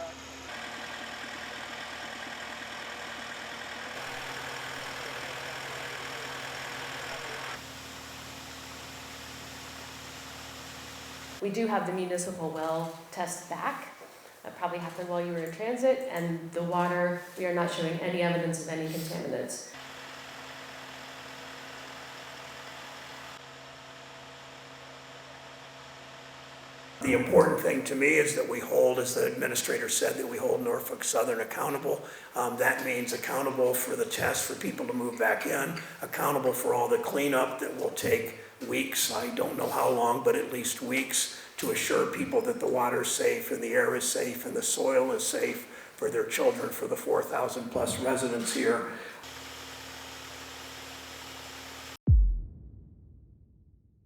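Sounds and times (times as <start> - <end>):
engine idling: 0.0 - 11.4
steady low hum with tones: 27.0 - 49.6.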